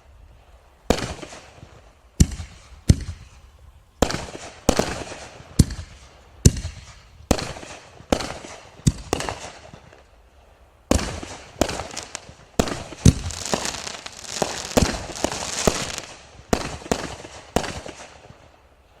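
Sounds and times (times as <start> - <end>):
firework shells banging: 11.0 - 16.8.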